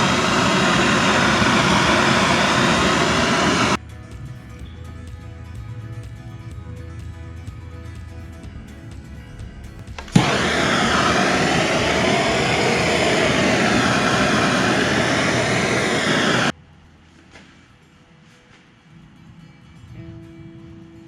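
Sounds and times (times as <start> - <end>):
heat gun blowing air: 0.0 - 3.8, 10.1 - 16.5.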